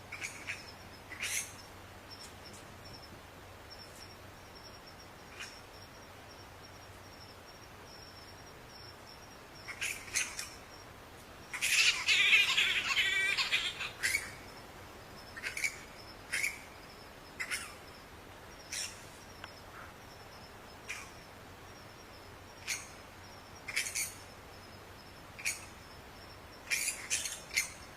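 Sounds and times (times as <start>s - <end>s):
bats squeaking and chattering: 0.1s - 3.0s, 9.6s - 10.7s, 11.5s - 14.6s, 15.2s - 18.0s, 18.6s - 19.6s, 22.5s - 23.0s, 23.6s - 24.3s, 25.4s - 25.8s, 26.6s - 27.9s.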